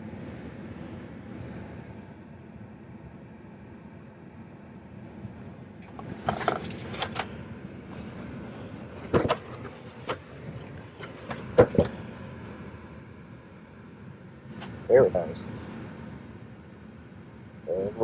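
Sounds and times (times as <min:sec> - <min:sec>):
clicks and knocks of model handling: 0:05.8 - 0:07.3, 0:07.9 - 0:12.0.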